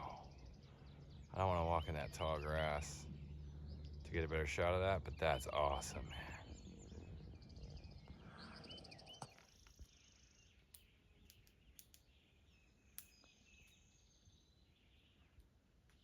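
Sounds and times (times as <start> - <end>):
faint bird chirps: 0.0 - 16.0
soft clicks: 10.7 - 12.1.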